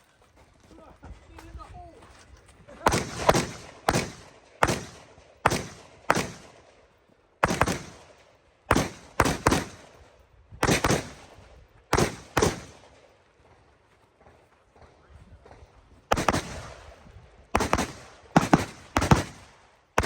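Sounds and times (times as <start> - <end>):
rifle shots echoing: 2.8 - 13.6, 14.8 - 20.0.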